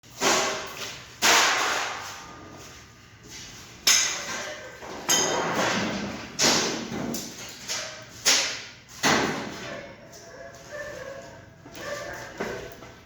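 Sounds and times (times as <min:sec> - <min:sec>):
hammer striking sheet metal: 0:00.2 - 0:02.2, 0:06.4 - 0:06.9.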